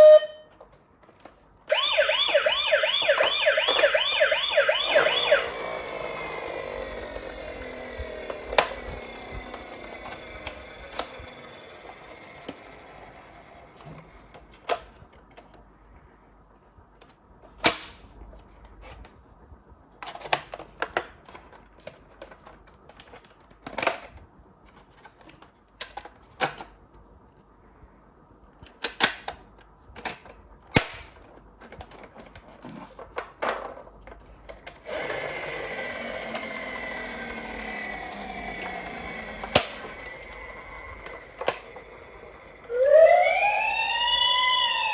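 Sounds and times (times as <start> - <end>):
wavering siren: 1.7 - 14.4, 34.9 - 44.9
toy cars clicking and clacking: 3.2 - 15.0, 30.0 - 44.9.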